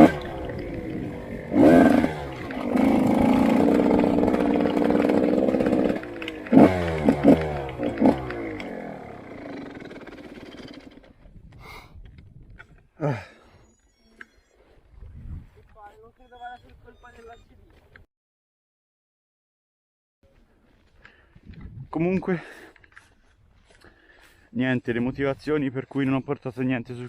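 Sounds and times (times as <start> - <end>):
motorcycle engine throttle blips: 0.0 - 12.8.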